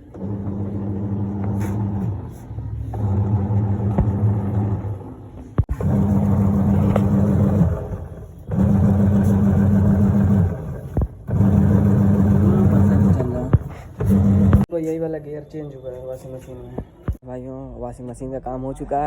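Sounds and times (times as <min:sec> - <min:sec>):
washing machine motor humming: 0:00.0 - 0:14.7.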